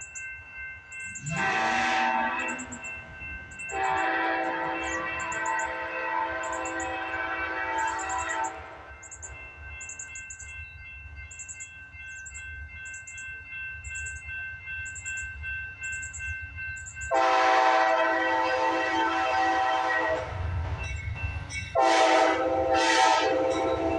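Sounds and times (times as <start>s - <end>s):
low train rumble: 0.0s - 23.9s
steady high ringing tone: 0.0s - 23.9s
locomotive air horn: 1.2s - 3.0s, 3.7s - 8.8s, 17.1s - 20.5s, 21.8s - 23.9s.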